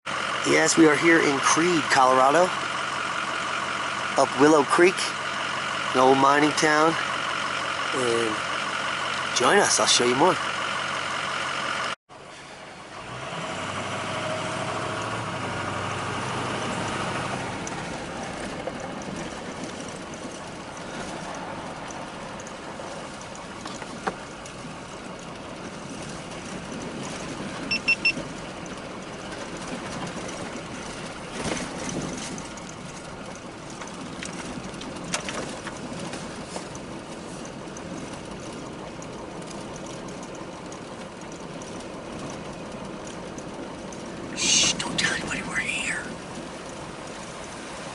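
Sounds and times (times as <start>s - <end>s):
vehicle engine and road noise: 0.0s - 47.9s
short high beeps: 27.7s - 28.2s.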